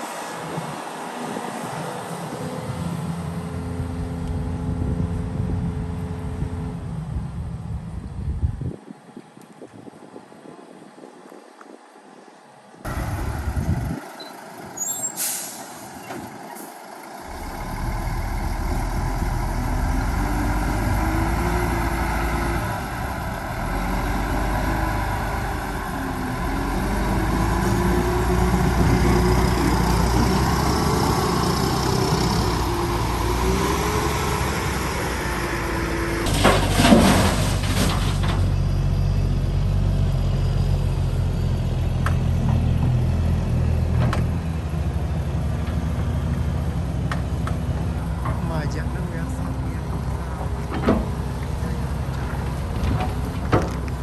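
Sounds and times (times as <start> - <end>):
heavy diesel engine running: 12.9 - 54.0
air hiss burst: 14.9 - 16.0.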